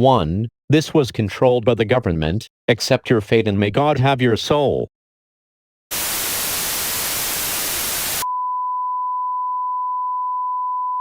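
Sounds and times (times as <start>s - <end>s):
television static hiss: 5.9s - 8.2s.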